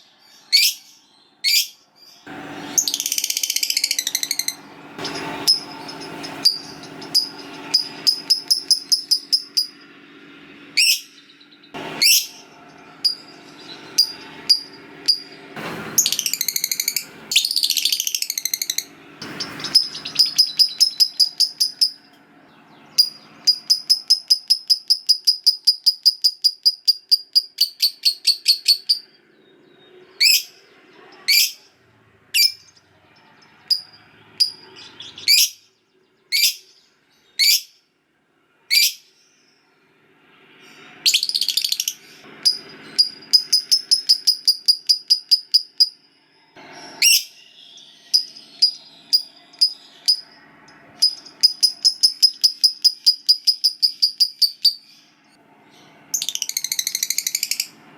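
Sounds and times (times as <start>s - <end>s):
lovebird chattering trill: 2.8s - 9.8s, 10.8s - 11.3s, 12.0s - 15.3s, 16.0s - 22.1s, 22.9s - 29.1s, 41.1s - 46.0s, 51.0s - 55.0s, 56.2s - 57.8s
bird sweeping calls: 11.8s - 21.8s.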